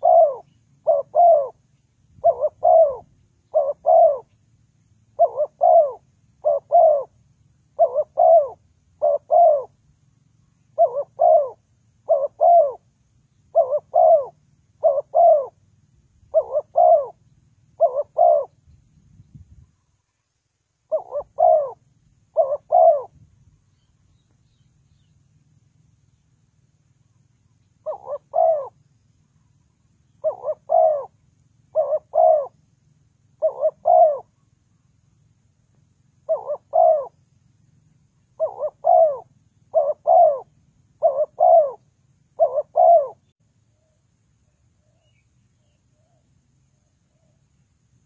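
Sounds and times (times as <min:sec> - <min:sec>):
dove cooing: 0:00.0 - 0:04.4, 0:05.1 - 0:09.9, 0:10.6 - 0:15.6, 0:16.3 - 0:18.6, 0:20.9 - 0:23.2, 0:27.7 - 0:28.8, 0:30.1 - 0:32.6, 0:33.2 - 0:34.5, 0:36.2 - 0:37.3, 0:38.2 - 0:44.0.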